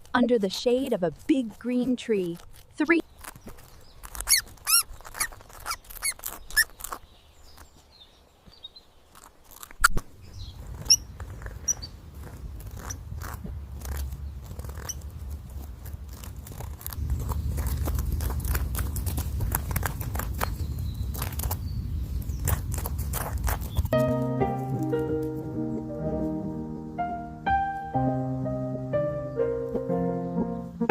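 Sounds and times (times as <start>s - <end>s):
guinea pigs chewing carrots: 0.0s - 7.6s, 10.6s - 24.0s
guinea pig squeaks: 4.0s - 7.0s, 10.7s - 15.1s
low wind rumble: 10.1s - 30.9s.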